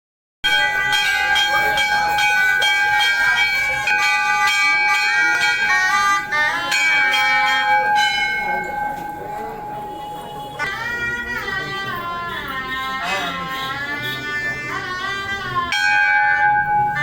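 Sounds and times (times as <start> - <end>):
brass temple bells ringing: 0.4 - 17.0.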